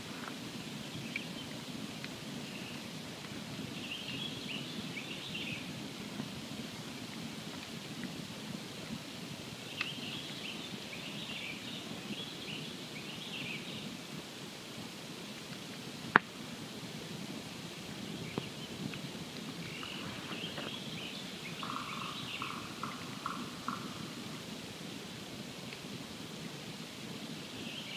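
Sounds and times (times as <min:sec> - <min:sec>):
campfire burning: 0:00.0 - 0:21.6, 0:22.2 - 0:27.8
wood crackling: 0:05.8 - 0:10.4.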